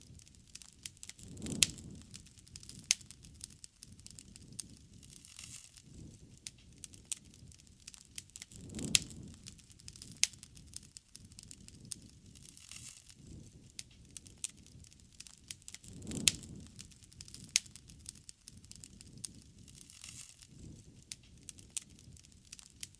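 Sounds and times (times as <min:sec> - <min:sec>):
campfire crackling and popping: 0:00.0 - 0:22.9
low rumble: 0:01.2 - 0:02.3, 0:08.6 - 0:09.7.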